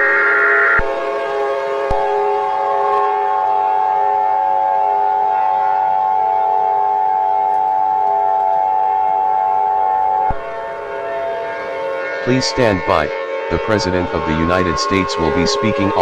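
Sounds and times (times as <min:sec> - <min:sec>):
electronic alert tone chord: 0:10.2 - 0:16.0.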